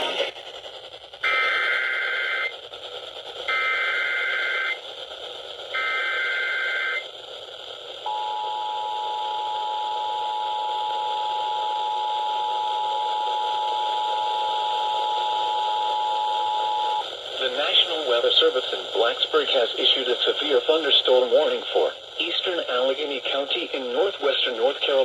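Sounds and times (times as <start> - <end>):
radio static hiss: 0.0 - 8.1, 13.4 - 25.0.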